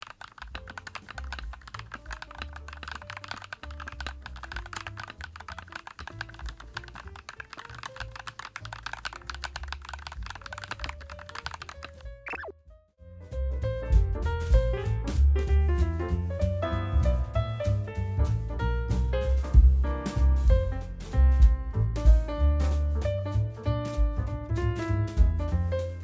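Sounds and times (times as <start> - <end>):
mechanical keyboard typing: 0.0 - 12.5
background music: 0.1 - 26.0.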